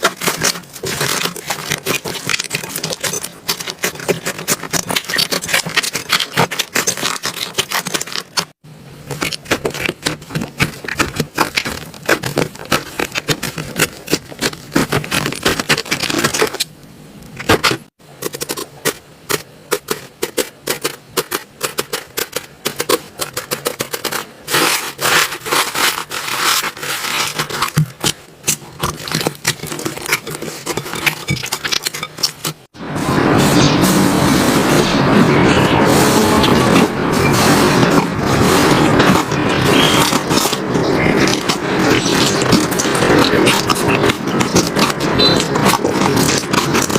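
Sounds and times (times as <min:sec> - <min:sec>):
slime crackling and popping: 0:00.0 - 0:16.7.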